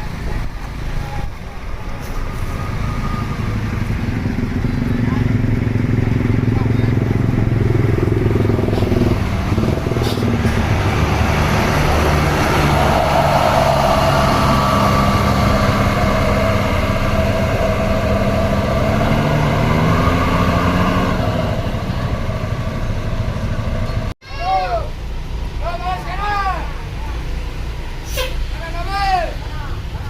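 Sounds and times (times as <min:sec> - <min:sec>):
road noise: 0:00.0 - 0:30.0
vehicle engine running: 0:02.8 - 0:24.2.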